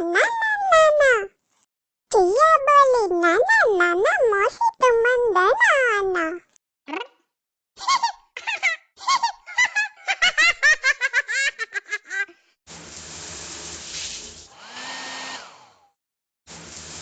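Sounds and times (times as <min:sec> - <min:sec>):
blower whirring: 0:12.7 - 0:15.9, 0:16.5 - 0:17.0.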